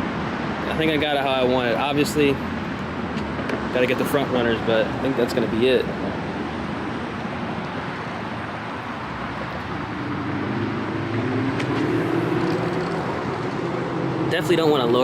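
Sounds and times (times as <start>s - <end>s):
road noise: 0.0s - 15.0s
car engine running while driving: 6.7s - 15.0s.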